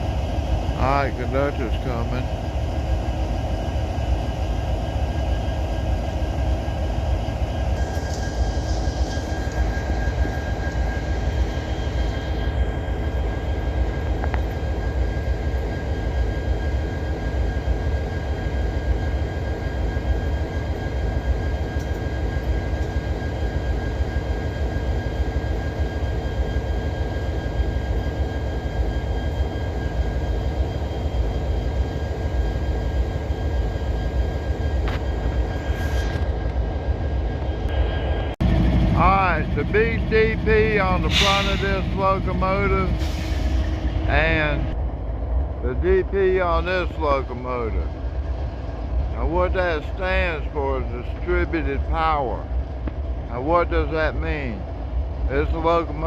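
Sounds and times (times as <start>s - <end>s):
high whine: 0.0s - 56.0s
locomotive idling rumble: 0.0s - 56.0s.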